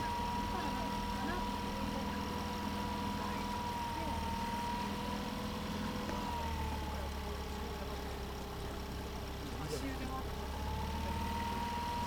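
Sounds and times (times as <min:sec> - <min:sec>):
boat engine running: 0:00.0 - 0:12.0.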